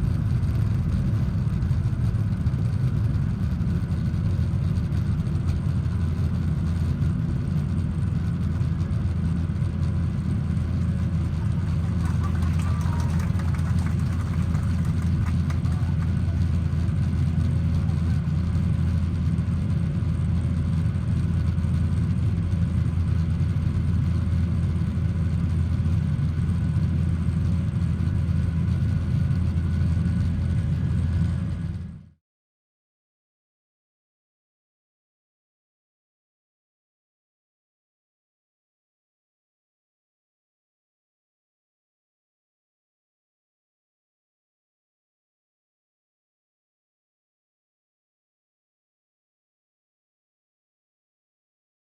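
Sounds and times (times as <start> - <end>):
jet engine cabin rumble: 0.0 - 32.2.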